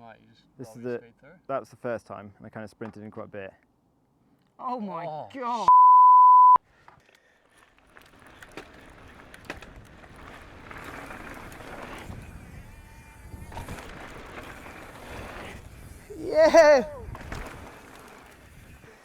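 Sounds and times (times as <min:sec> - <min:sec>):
bike clicks and rattles: 0:06.8 - 0:19.0
bike tyre rumble on dirt: 0:07.5 - 0:19.0.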